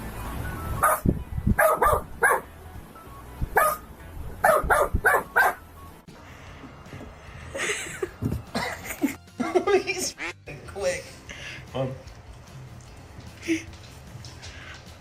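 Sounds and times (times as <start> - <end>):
dog barking: 0.8 - 2.5, 3.6 - 5.6.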